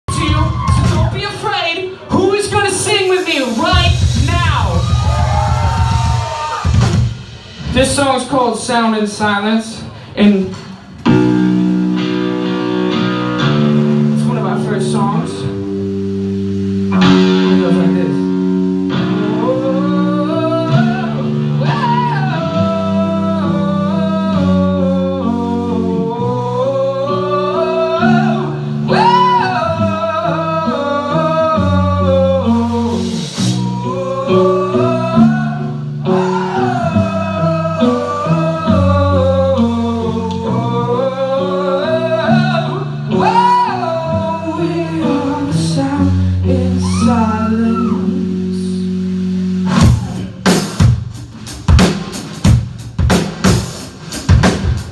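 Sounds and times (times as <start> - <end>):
held guitar chords: 0.1 - 8.7, 10.9 - 54.9
person singing gliding vocal lines: 16.9 - 50.5.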